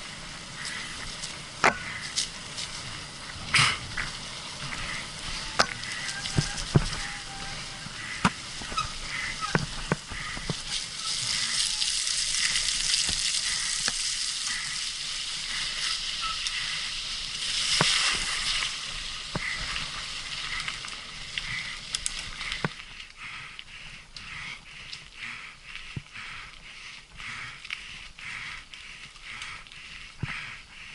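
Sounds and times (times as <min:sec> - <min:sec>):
bike rattling over bumps: 0:00.0 - 0:23.0
bike tyres crunching on gravel: 0:00.0 - 0:23.0.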